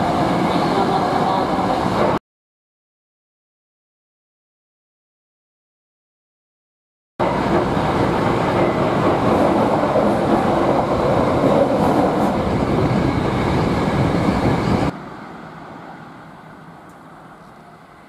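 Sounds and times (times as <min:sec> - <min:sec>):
train wheels on rails: 0:07.2 - 0:18.0.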